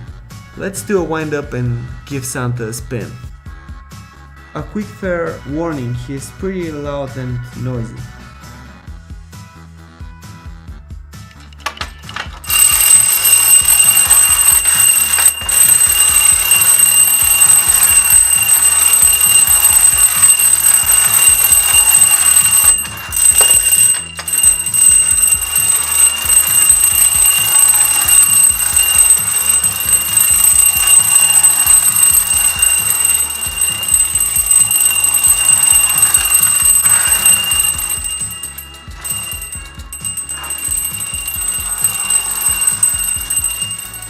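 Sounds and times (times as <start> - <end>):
toy bell ringing: 11.7 - 44.0.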